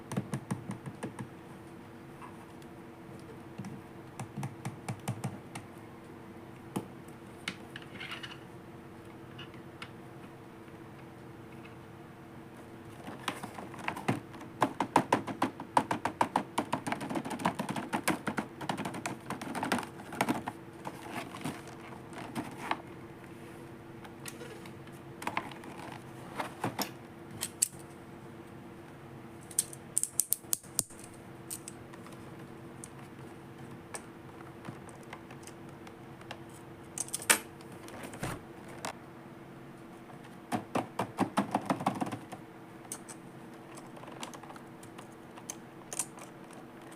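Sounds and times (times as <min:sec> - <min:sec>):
plastic toy pieces clicking: 0:29.5 - 0:31.7.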